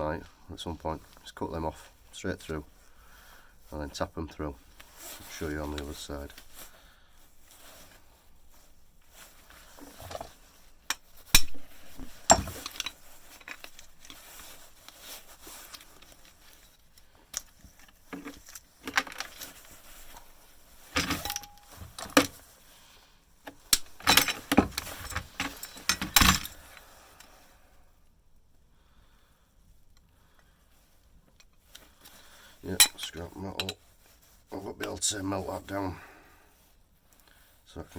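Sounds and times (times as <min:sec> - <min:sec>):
metal parts clinking and knocking: 0:09.8 - 0:16.6, 0:17.3 - 0:20.1, 0:20.9 - 0:22.4, 0:23.5 - 0:26.6.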